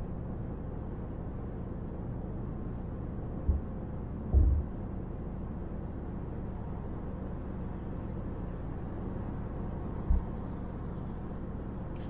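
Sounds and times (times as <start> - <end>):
car interior road rumble: 3.3 - 4.8, 9.9 - 11.1
low thump: 4.3 - 4.7.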